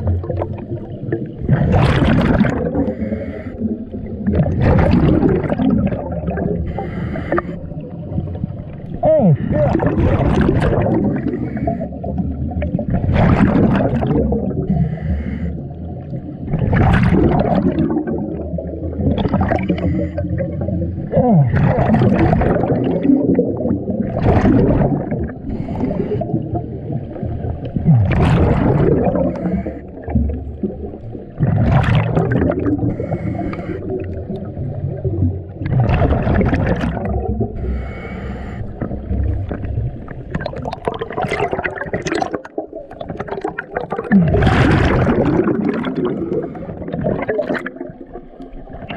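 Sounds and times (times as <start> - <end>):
rush of exhaust bubbles: 0.0 - 48.9
regulator inhale hiss: 2.8 - 3.6, 6.7 - 7.7, 14.7 - 15.6, 25.5 - 26.4, 32.9 - 34.0, 37.6 - 38.9.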